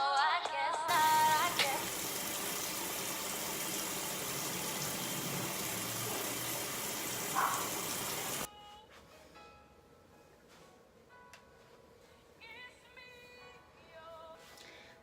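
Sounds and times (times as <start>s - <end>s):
shower spray hissing: 0.9s - 8.5s.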